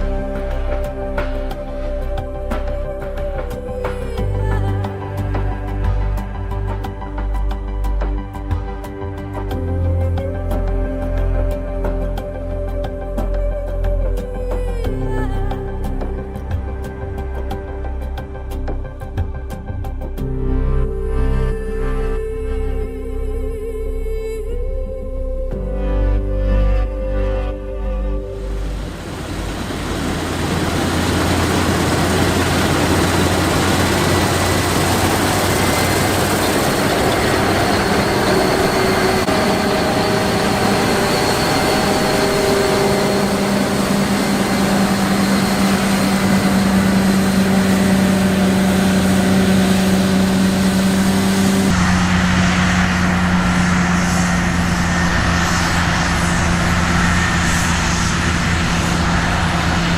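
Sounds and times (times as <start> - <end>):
combine harvester running: 0.0 - 4.4, 28.4 - 59.9.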